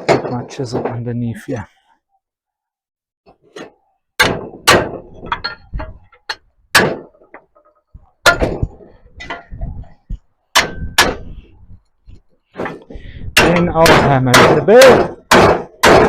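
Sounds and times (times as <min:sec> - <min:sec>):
hammer striking steel plate: 0:10.5 - 0:11.4, 0:13.4 - 0:16.0.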